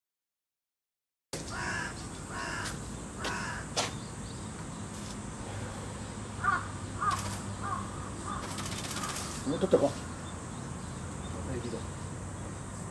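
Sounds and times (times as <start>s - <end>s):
soft bird calls: 1.4s - 12.9s
crow cawing: 1.5s - 3.8s, 6.4s - 9.9s.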